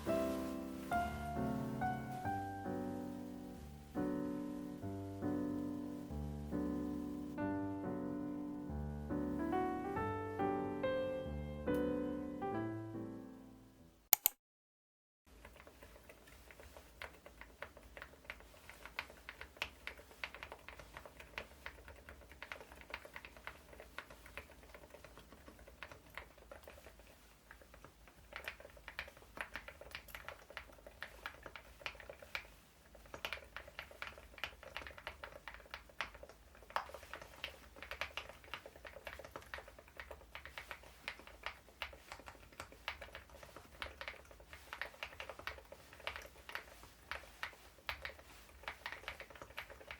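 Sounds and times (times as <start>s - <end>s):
quiet keyboard typing: 14.2s - 14.4s, 15.3s - 49.9s.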